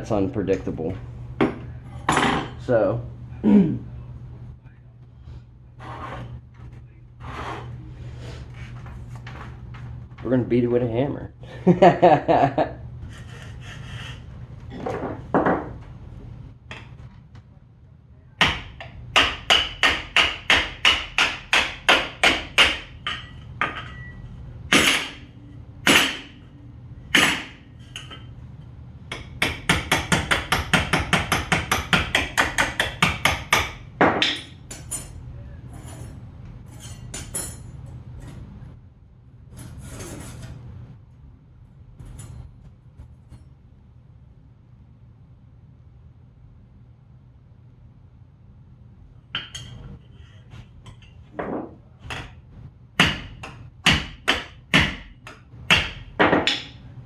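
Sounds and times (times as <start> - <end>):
hammer striking metal: 18.4 - 24.1, 24.7 - 25.2, 25.8 - 26.4, 29.1 - 35.1, 53.0 - 56.8.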